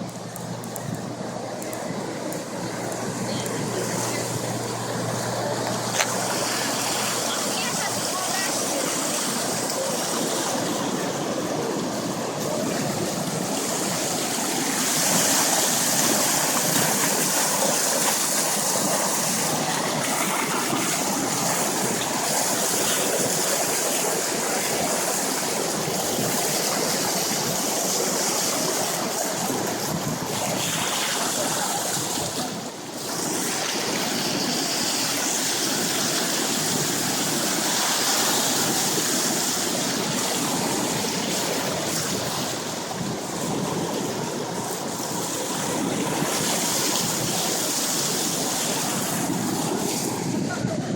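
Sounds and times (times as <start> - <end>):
flood water rushing: 0.0 - 50.9.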